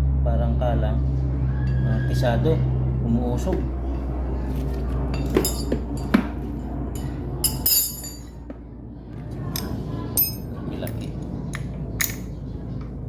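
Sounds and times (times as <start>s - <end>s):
steady low hum: 0.0s - 13.0s
metal tools clinking: 5.1s - 6.3s, 6.9s - 8.4s, 9.6s - 12.4s.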